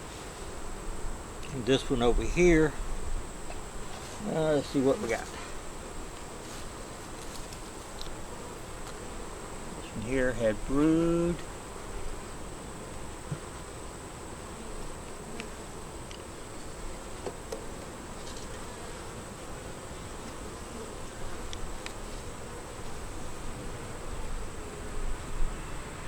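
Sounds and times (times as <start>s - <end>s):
honey bees buzzing: 0.0s - 26.0s.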